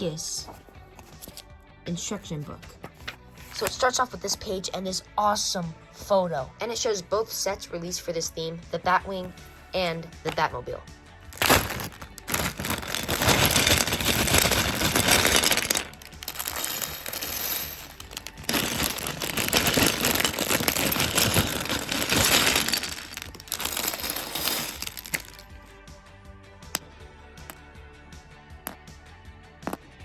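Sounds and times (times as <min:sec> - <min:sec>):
plastic bag crinkling: 0:11.4 - 0:25.4
plastic pieces clicking: 0:11.4 - 0:25.4.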